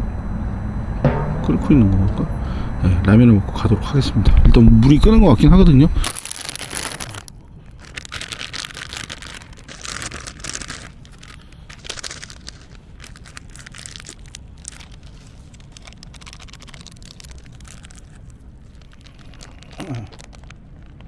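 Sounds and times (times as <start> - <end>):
plastic packaging crinkling: 6.0 - 21.0.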